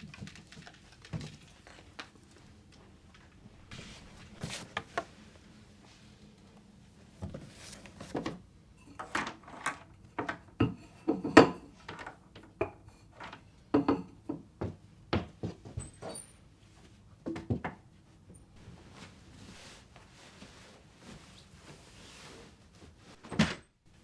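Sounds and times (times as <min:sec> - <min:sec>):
objects knocking and clattering: 0:07.2 - 0:16.2.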